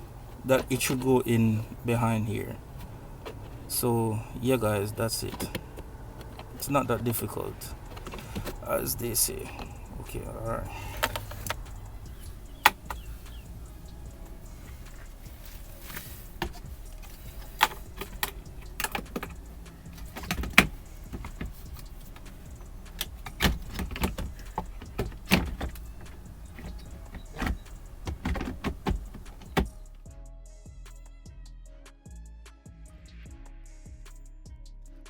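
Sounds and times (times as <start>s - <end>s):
steady low hum: 0.0s - 30.0s
parts and tools clicking: 5.0s - 29.9s.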